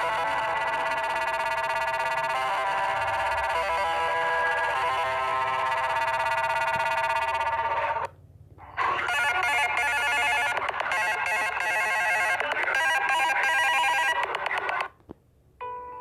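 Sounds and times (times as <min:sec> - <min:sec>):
phone ringtone melody: 0:00.0 - 0:08.0, 0:08.8 - 0:14.8.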